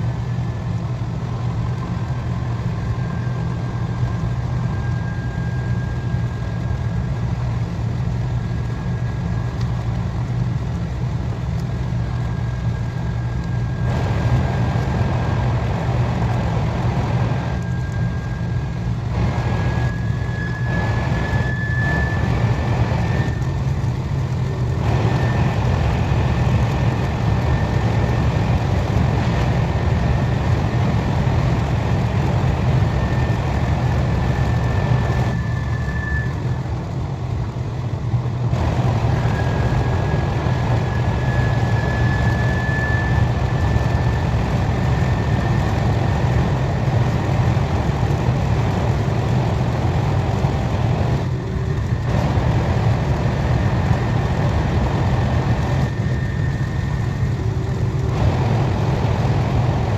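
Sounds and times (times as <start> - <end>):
train running rumble: 6.2 - 59.9
high whine: 12.0 - 37.0, 38.5 - 59.9.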